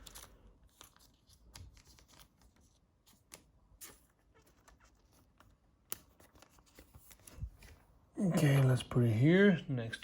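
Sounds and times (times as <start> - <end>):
trading cards rustling and clicking: 0.0 - 7.9.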